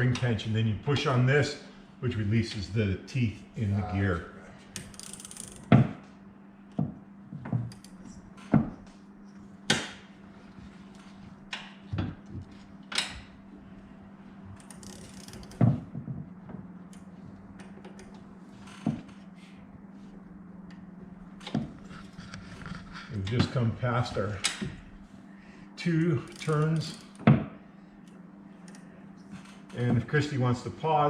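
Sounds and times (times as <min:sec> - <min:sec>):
steady low hum: 0:00.0 - 0:31.0
winding gear clicking: 0:04.8 - 0:05.7, 0:14.6 - 0:15.6, 0:26.2 - 0:27.2.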